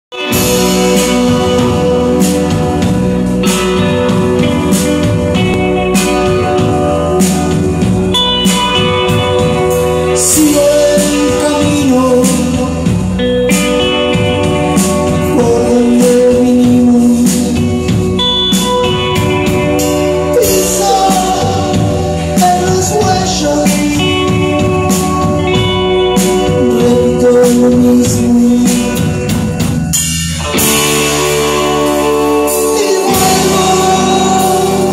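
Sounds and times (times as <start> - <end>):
band playing: 0.1 - 34.9
steady percussion beat: 0.2 - 34.9
person singing: 9.0 - 18.8, 19.7 - 25.6, 26.2 - 29.5, 30.8 - 34.9.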